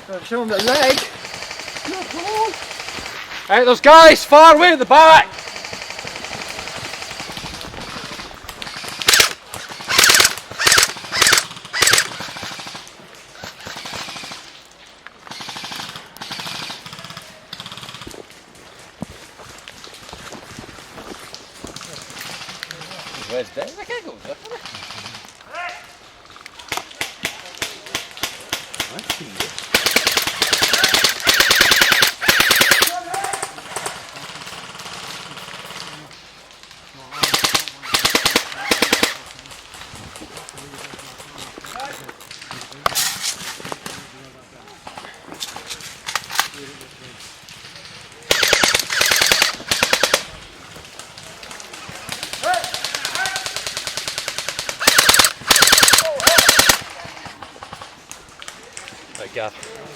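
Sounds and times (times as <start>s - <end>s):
airsoft guns firing full-auto: 0.2s - 14.5s, 15.2s - 18.1s, 24.5s - 25.4s, 26.7s - 36.1s, 37.1s - 39.4s, 47.8s - 50.4s, 51.1s - 58.0s
people shouting: 1.6s - 2.8s, 3.6s - 5.4s, 25.5s - 26.0s, 38.2s - 39.1s, 52.2s - 53.7s, 54.8s - 57.1s
faint distant gunfire: 5.3s - 14.4s, 51.8s - 58.0s.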